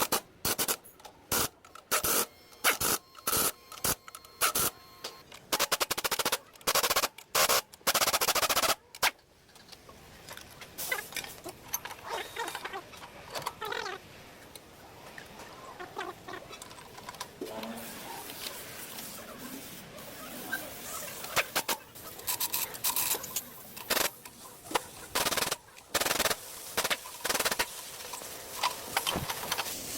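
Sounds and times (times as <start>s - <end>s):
rapid mechanical rattling: 25.1s - 27.8s.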